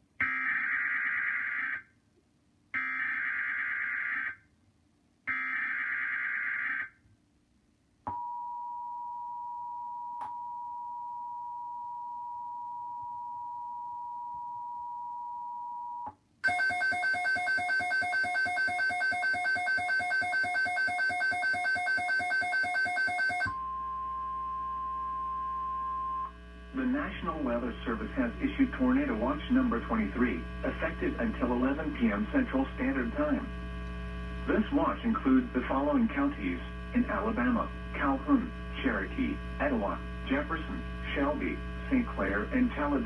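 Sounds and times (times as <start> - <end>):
fast-pulsing alarm beeping: 16.4 - 23.8
low hum: 23.5 - 43.0.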